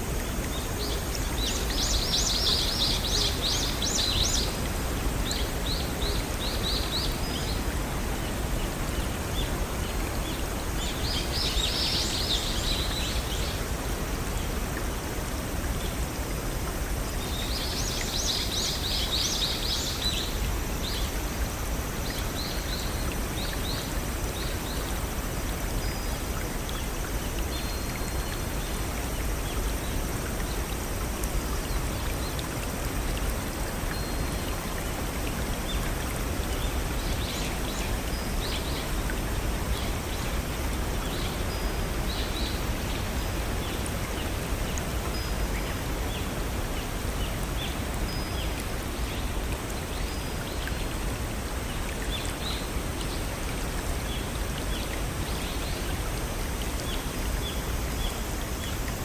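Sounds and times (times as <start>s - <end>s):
brook rushing over waterfalls: 0.0s - 59.0s.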